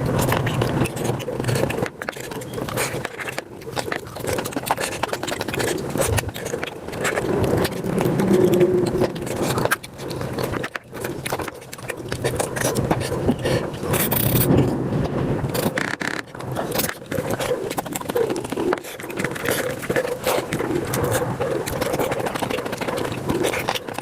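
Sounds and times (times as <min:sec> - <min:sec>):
sped-up chewing and crunching: 0:00.0 - 0:24.0.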